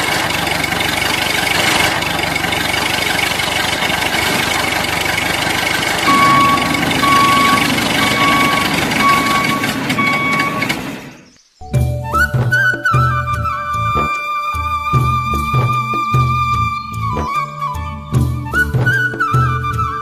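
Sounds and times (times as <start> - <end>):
engine running: 0.0 - 11.4
electronic beep: 6.0 - 10.7.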